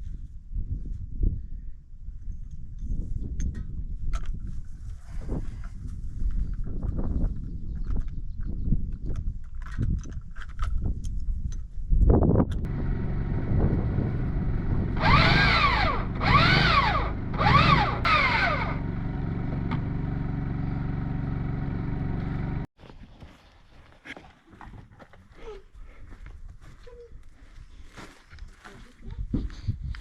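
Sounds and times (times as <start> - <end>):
motor running under load: 12.7 - 22.7.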